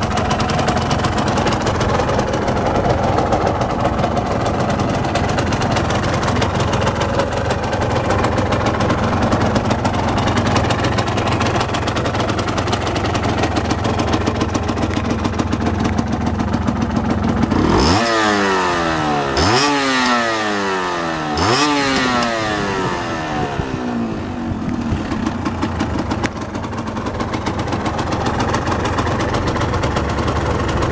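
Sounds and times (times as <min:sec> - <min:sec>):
two-stroke engine idling: 0:00.0 - 0:30.9
engine revving: 0:17.3 - 0:25.3.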